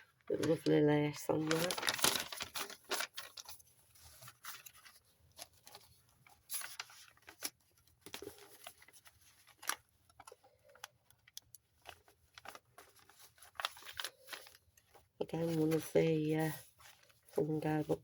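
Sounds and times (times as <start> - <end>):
paper pages rustling: 0.3 - 18.0.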